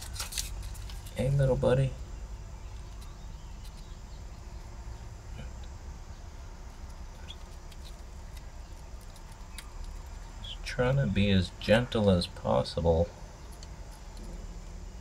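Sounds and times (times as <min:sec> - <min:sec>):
paper scratching and ticking: 0:00.0 - 0:01.6, 0:06.7 - 0:10.5
low steady rumble: 0:00.0 - 0:15.0.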